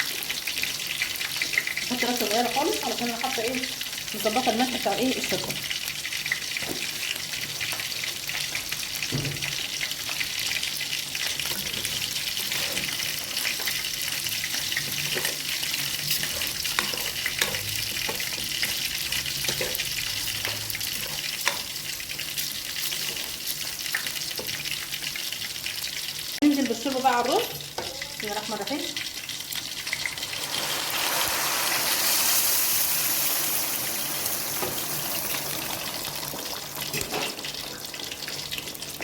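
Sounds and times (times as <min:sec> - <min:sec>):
rice sizzling in oil: 0:00.0 - 0:39.0
spoon stirring and scraping: 0:11.2 - 0:25.0.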